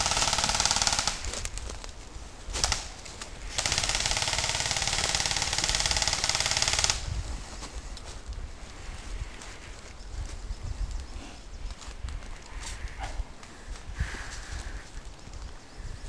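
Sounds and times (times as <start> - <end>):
airsoft gun firing bursts: 0.0 - 1.4, 2.5 - 7.1.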